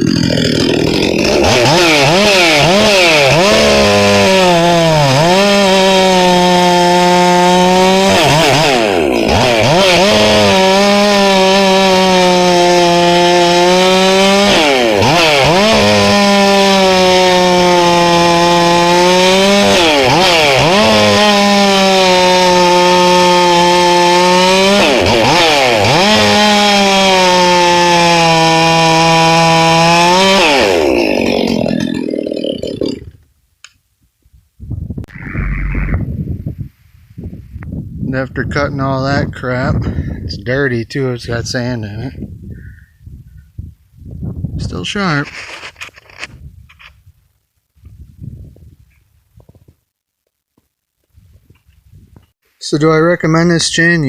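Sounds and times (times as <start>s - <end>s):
chainsaw cutting wood: 0.0s - 33.3s, 45.3s - 46.9s.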